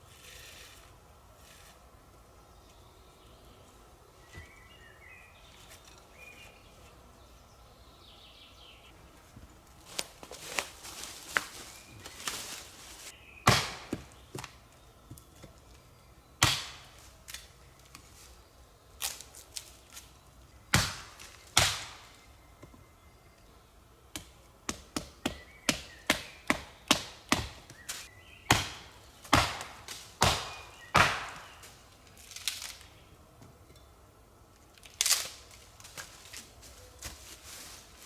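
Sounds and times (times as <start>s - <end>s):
sharp chopping knocks: 13.4s - 14.5s, 16.4s - 16.8s, 20.7s - 22.0s, 28.5s - 31.6s
small clicks and cracks: 34.5s - 36.4s.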